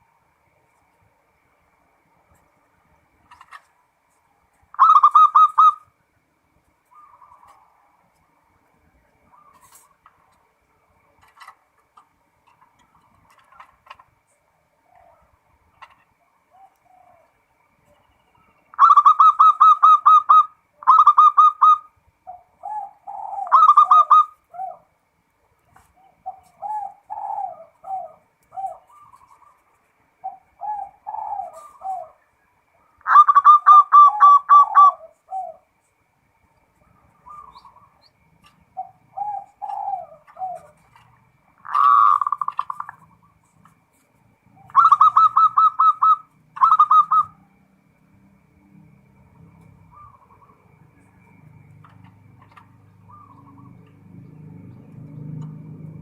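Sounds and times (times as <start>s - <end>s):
dove cooing: 4.3s - 6.0s, 6.8s - 8.1s, 9.2s - 10.4s, 14.7s - 25.0s, 25.7s - 35.8s, 36.8s - 47.8s, 49.4s - 56.0s.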